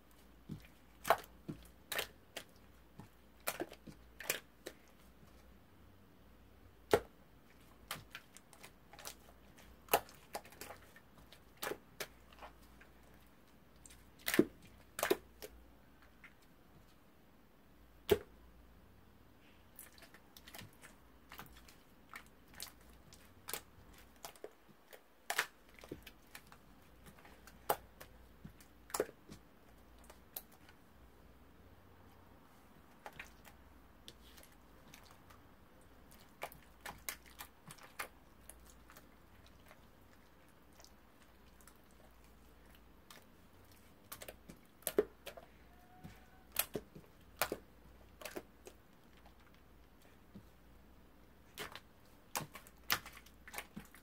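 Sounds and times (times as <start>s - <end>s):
faint low hum: 0.0s - 54.0s.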